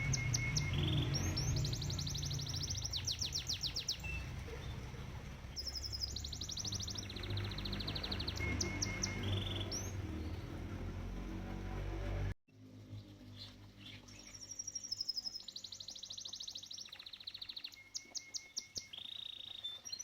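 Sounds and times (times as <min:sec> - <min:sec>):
canary singing trills: 0:00.0 - 0:11.0, 0:12.9 - 0:20.0
flowing pond water rumble: 0:00.0 - 0:20.0.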